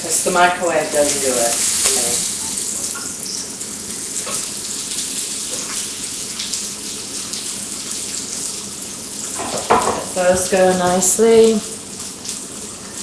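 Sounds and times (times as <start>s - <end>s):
hot dogs sizzling in a pan: 0.0s - 13.0s.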